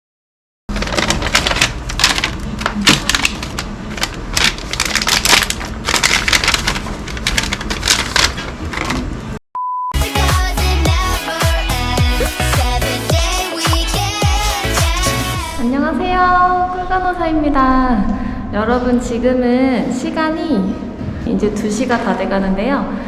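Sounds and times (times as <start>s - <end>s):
rapid clicking and clatter: 0.7s - 9.0s
brief steady beep: 9.6s - 10.0s
electronic dance music: 10.0s - 15.6s.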